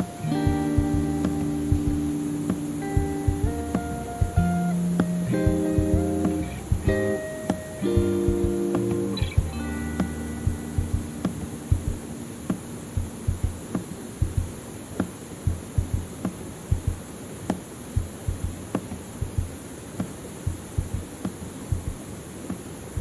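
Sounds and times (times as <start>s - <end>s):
heartbeat double thumps: 0.4s - 2.2s, 2.9s - 7.1s, 8.0s - 12.1s, 13.0s - 14.6s, 15.4s - 17.0s, 18.0s - 18.6s, 19.2s - 19.6s, 20.5s - 22.0s.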